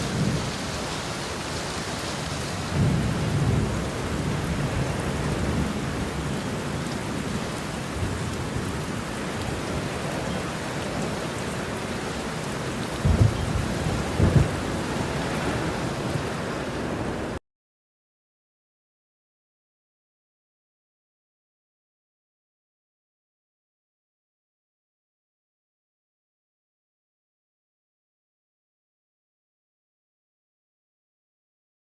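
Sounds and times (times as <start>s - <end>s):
steady rain: 0.0s - 17.4s
thunder rumbling: 0.0s - 17.4s.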